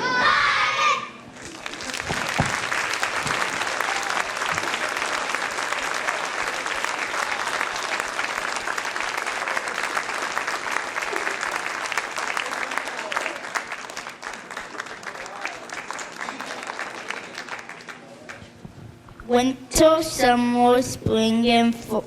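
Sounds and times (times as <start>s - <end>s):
audience applauding: 1.4s - 18.4s.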